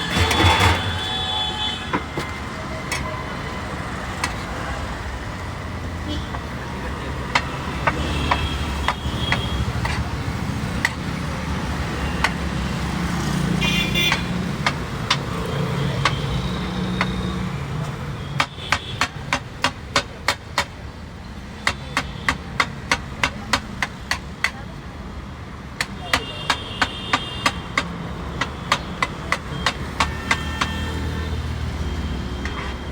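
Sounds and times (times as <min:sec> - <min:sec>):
metal spatula striking griddle: 0:00.0 - 0:01.4
street traffic: 0:00.0 - 0:32.9.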